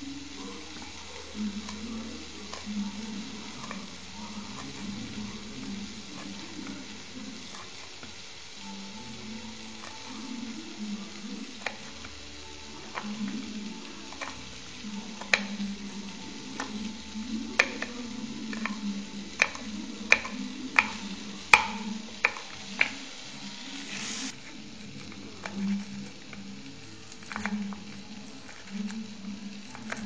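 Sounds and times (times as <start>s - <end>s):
short rising hiss: 23.3s - 24.3s.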